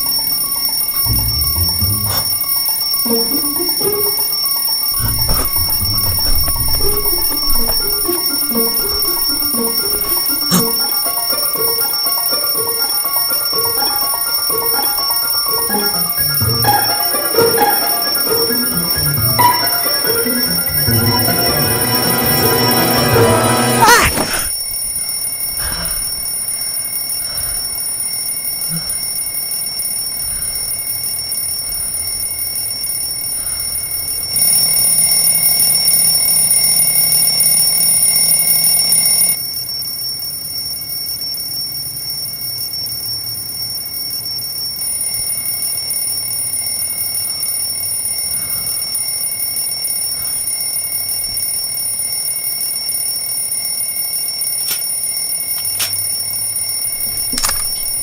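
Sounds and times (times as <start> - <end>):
alarm clock ringing: 0.0 - 39.8, 44.4 - 58.0.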